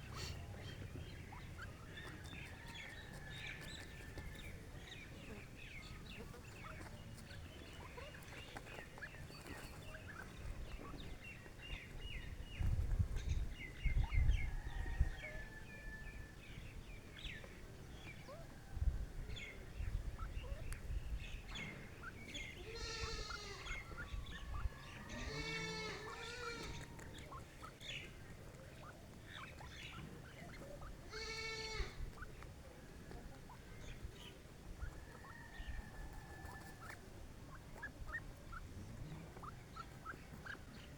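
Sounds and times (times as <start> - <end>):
small birds chirping: 0.0 - 40.9
goat bleating: 22.6 - 23.8, 25.1 - 26.8, 31.1 - 32.0.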